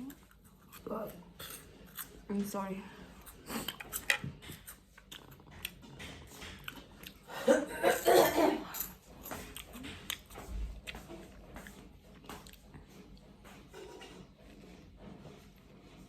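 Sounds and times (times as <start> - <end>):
wet chewing and crunching: 0.0 - 15.9
person coughing: 7.3 - 8.9.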